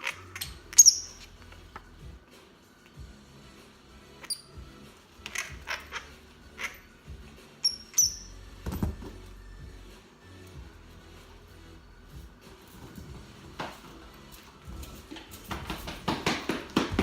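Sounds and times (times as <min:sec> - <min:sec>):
monkey squeaking: 0:00.0 - 0:01.5, 0:04.2 - 0:08.5
rustling and knocking: 0:08.6 - 0:09.2, 0:12.8 - 0:17.0.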